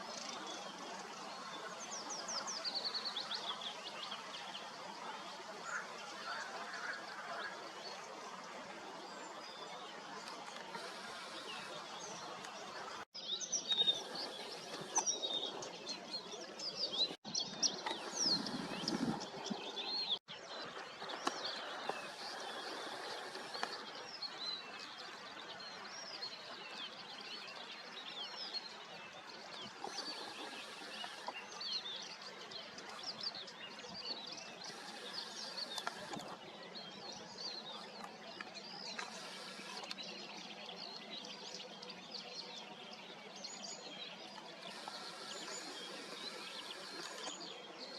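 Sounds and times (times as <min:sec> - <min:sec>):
small birds chirping and calling: 0:16.7 - 0:20.2, 0:29.2 - 0:47.9.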